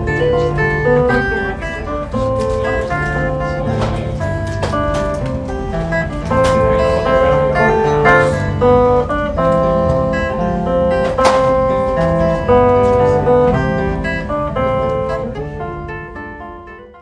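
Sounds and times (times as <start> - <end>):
instrumental guitar music: 0.0 - 17.0.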